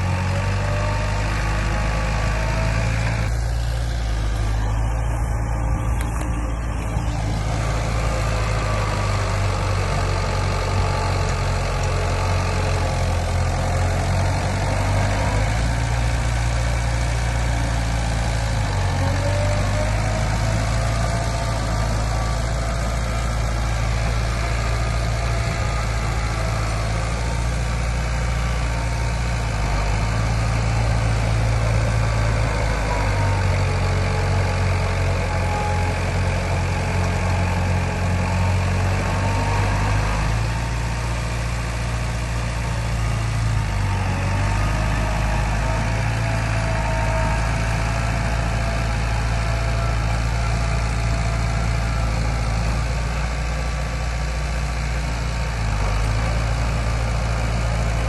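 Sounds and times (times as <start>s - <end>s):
heavy diesel engine running: 0.0s - 58.0s.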